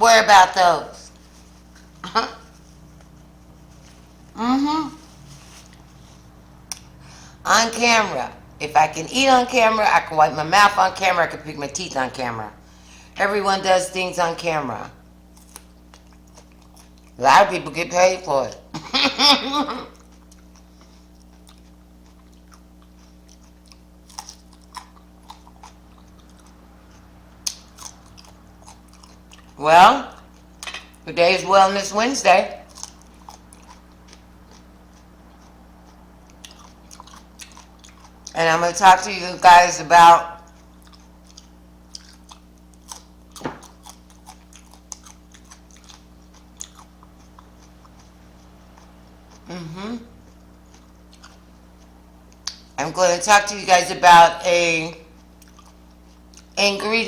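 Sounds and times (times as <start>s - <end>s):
low electrical hum: 0.0s - 57.0s
person chewing food: 1.0s - 7.4s, 15.3s - 17.2s, 19.7s - 31.1s, 32.6s - 38.4s, 40.3s - 52.8s, 55.0s - 56.6s.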